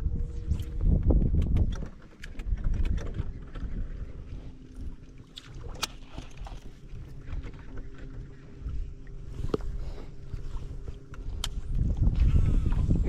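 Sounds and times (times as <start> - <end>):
small boat rumbling: 0.0 - 13.0
faint steady hum: 2.8 - 13.0.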